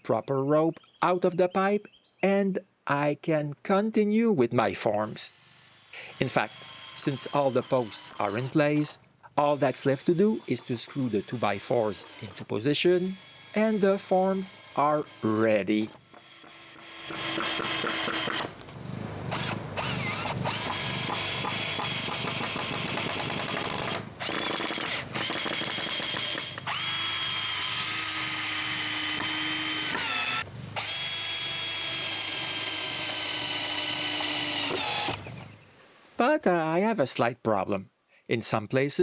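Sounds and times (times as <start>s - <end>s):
cordless drill driving screws: 5.0s - 35.6s.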